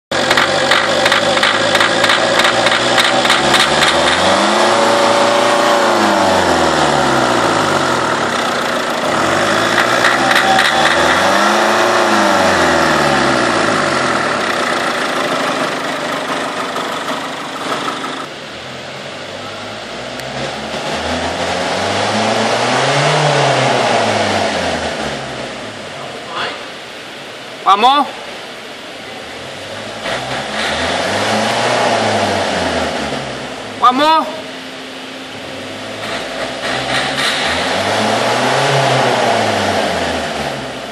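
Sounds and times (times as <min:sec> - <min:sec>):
small diesel engine knocking: 0:00.1 - 0:04.7, 0:13.4 - 0:18.3.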